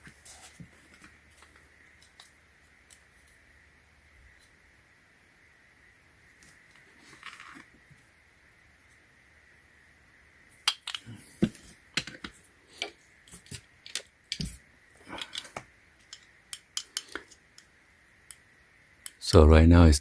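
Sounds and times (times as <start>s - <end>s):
sharp clicks of small hard parts: 10.6s - 11.1s, 11.9s - 18.4s.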